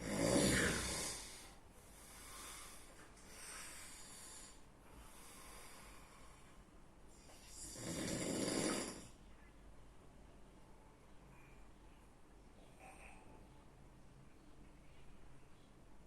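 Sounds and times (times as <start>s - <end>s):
person snoring: 0.0s - 1.6s, 7.5s - 9.1s.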